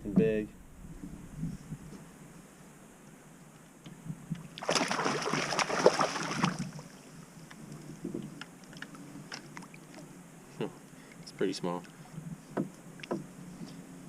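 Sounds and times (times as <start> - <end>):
water splashing loudly: 4.6 - 6.8.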